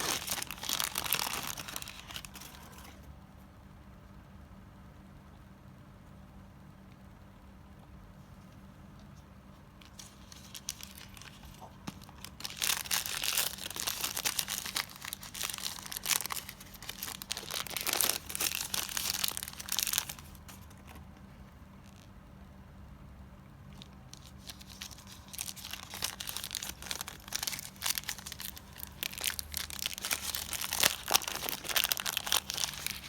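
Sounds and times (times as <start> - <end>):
plastic packaging crumpling: 0.0 - 3.0, 9.8 - 21.0, 21.8 - 22.1, 23.8 - 33.0.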